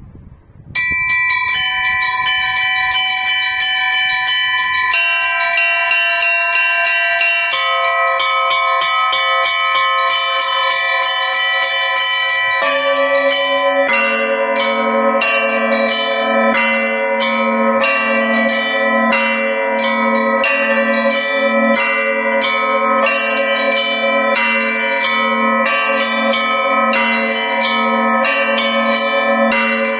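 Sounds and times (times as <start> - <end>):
large low bells ringing: 0.7 - 29.9
small high bells ringing: 0.8 - 29.9.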